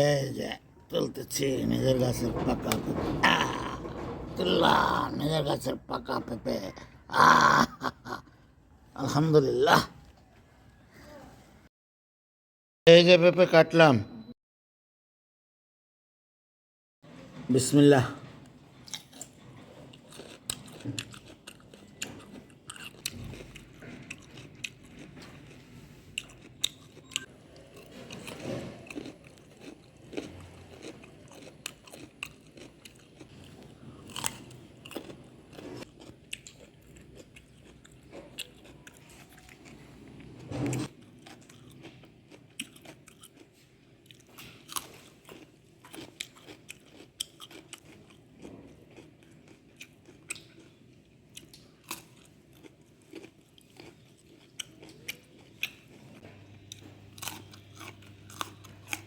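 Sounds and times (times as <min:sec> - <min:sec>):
person chewing fruit: 0:18.8 - 0:59.0.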